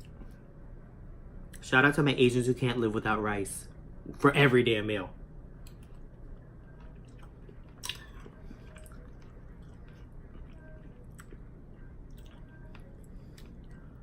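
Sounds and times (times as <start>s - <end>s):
person chewing food: 5.6s - 14.0s.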